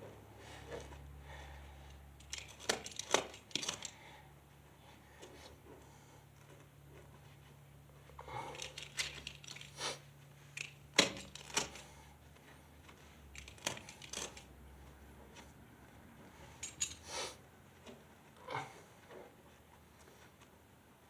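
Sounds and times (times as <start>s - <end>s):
metal fasteners clinking: 1.9s - 4.0s, 8.5s - 9.8s, 10.5s - 12.0s, 12.9s - 14.5s, 16.4s - 17.1s.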